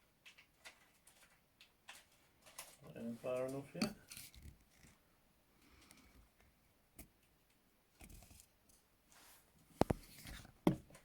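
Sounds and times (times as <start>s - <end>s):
handcuffs rustling and scraping: 0.3s - 5.0s.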